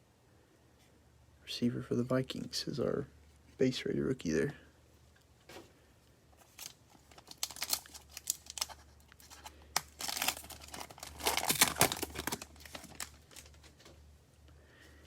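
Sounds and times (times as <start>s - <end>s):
foil wrapper tearing and crinkling: 6.4s - 13.8s.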